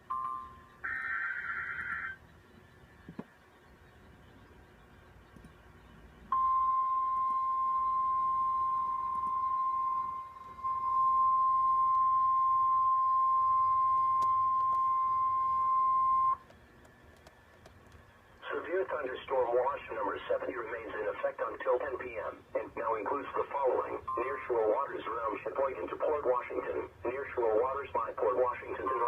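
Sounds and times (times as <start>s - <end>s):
steady high alarm tone: 0.0s - 2.3s, 6.3s - 16.4s.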